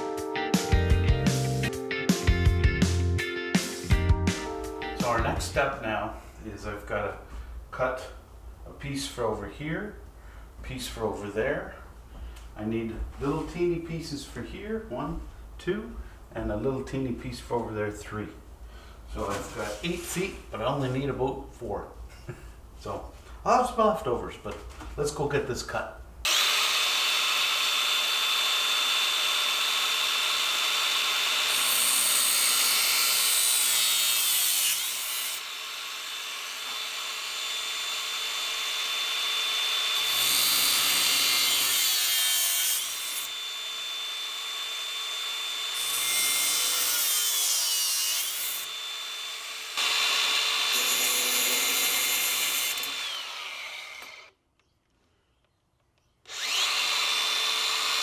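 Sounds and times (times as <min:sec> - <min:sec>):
wet tile saw cutting: 0:26.3 - 0:54.3, 0:56.3 - 0:58.0.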